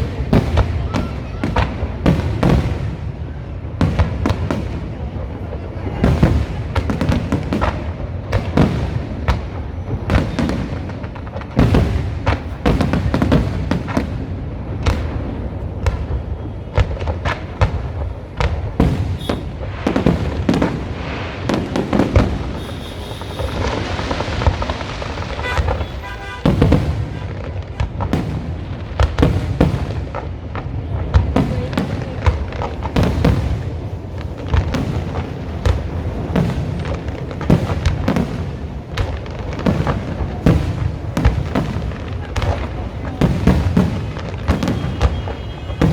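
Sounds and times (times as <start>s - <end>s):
fireworks bangs and booms: 0.0s - 45.9s
fireworks crackling: 0.0s - 45.9s.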